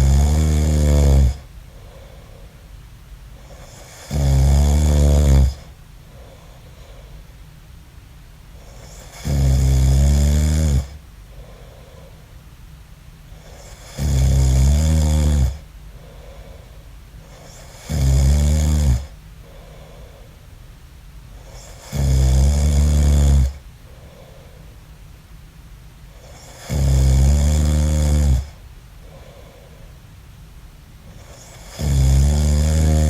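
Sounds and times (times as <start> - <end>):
man snoring: 0.0 - 1.5, 3.4 - 5.7, 8.7 - 12.1, 13.4 - 15.6, 17.3 - 20.0, 21.5 - 23.6, 26.2 - 29.6, 31.1 - 33.0
faint breaths: 0.7 - 4.2, 5.2 - 7.5, 10.8 - 12.5, 15.5 - 18.0, 19.0 - 20.6, 23.5 - 25.1, 28.4 - 30.3.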